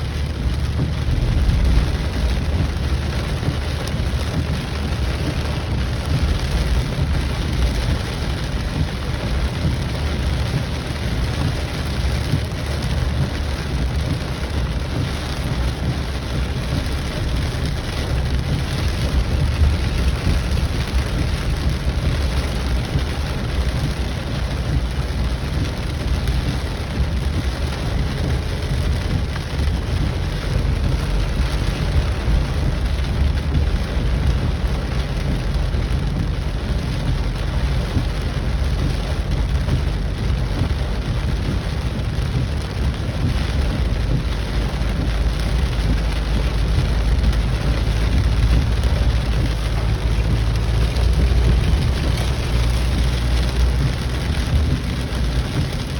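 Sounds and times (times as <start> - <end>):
heavy rain falling: 0.0 - 55.9
steady low rumble: 0.0 - 55.9.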